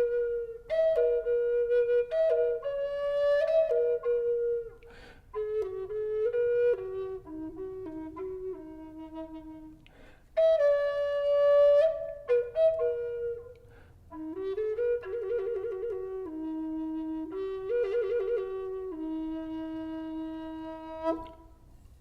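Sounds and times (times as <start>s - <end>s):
flute playing slow melody: 0.0s - 21.8s
player breathing: 4.8s - 5.3s, 9.9s - 10.3s.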